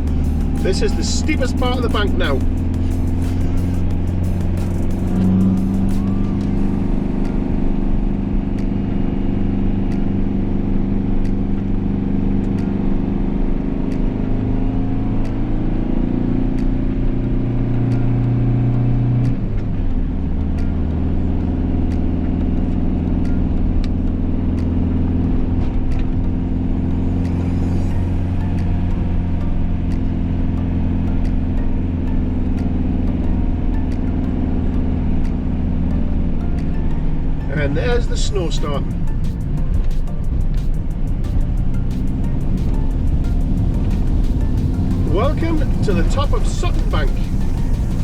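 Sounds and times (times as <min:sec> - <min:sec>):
van engine labouring uphill: 0:00.0 - 0:48.0.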